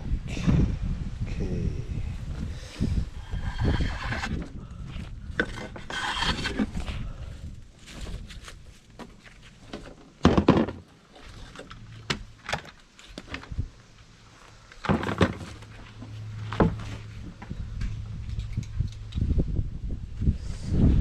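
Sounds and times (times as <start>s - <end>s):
wooden panel scraping: 3.1s - 7.2s.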